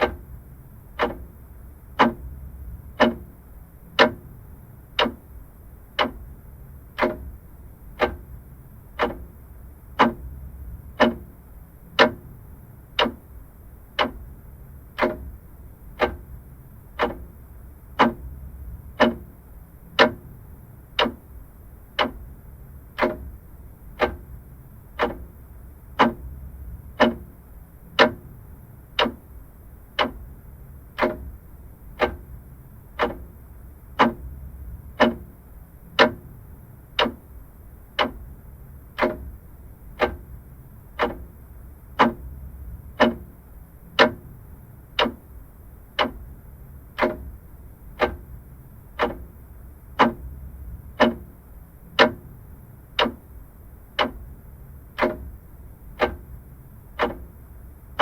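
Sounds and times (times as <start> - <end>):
faint low rumble: 0.0 - 58.0
mechanical clock ticking: 0.0 - 58.0.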